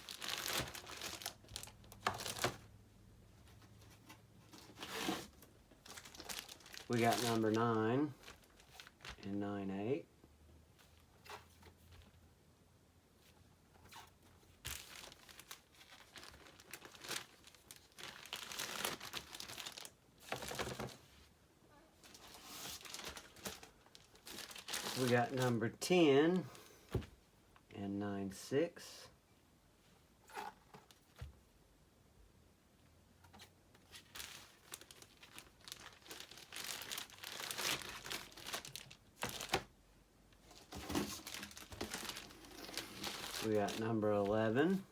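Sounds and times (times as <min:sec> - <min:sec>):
packaging crinkling and rustling: 0:00.0 - 0:02.7, 0:03.5 - 0:09.3, 0:13.8 - 0:21.1, 0:22.0 - 0:25.6, 0:33.4 - 0:44.9.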